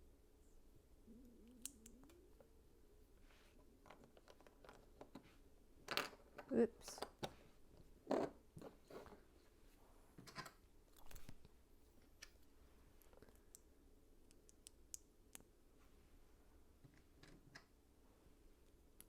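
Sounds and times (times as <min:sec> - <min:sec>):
plastic pieces clacking: 0:03.8 - 0:05.2.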